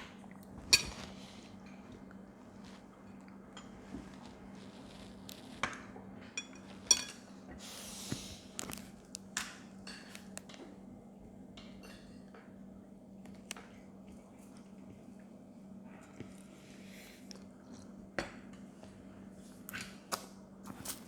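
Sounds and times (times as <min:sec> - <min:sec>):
utensils clinking against dishes: 0:00.6 - 0:01.8, 0:06.3 - 0:07.3, 0:11.6 - 0:12.4.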